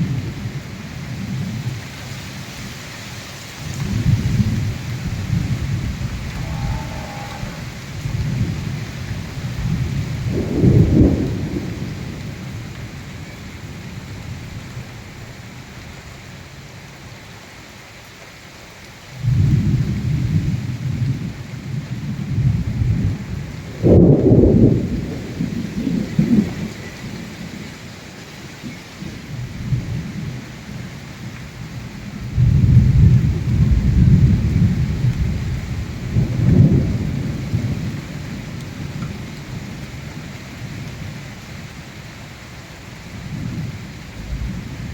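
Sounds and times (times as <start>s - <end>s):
heavy rain: 0.0s - 44.9s
deep rumbles: 4.3s - 8.9s.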